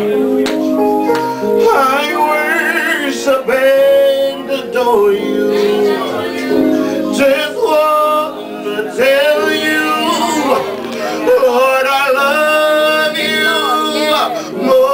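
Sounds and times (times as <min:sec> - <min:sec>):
instrumental accompaniment: 0:00.0 - 0:14.9
man and woman singing gospel: 0:00.0 - 0:14.9.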